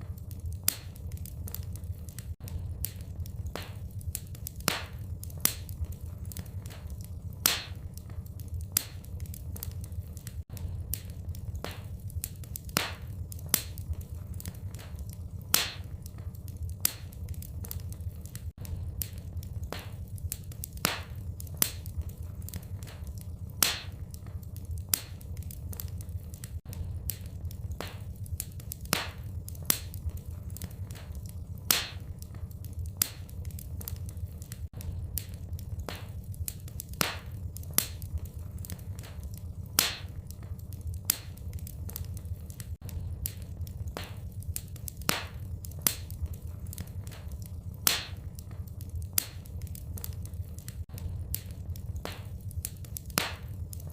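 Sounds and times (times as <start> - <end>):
low rumble of flame: 0.0 - 53.9
wood fire crackling and popping: 0.0 - 53.9.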